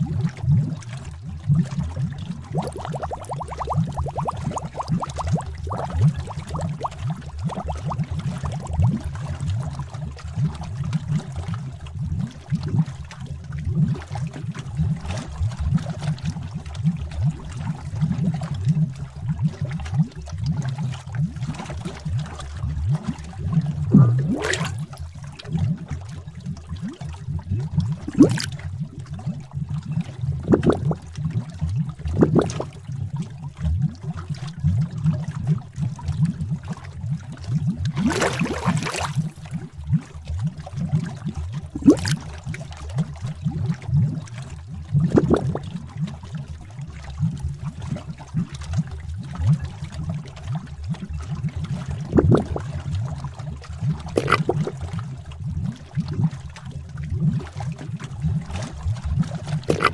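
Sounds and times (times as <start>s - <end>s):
large bubbles bursting: 0.0s - 9.9s, 22.8s - 26.0s, 26.6s - 28.8s, 30.0s - 33.2s, 37.7s - 40.1s, 41.1s - 42.6s, 44.9s - 45.9s, 52.0s - 53.1s, 54.0s - 55.0s, 58.6s - 59.9s
thick liquid bubbling: 0.0s - 59.9s.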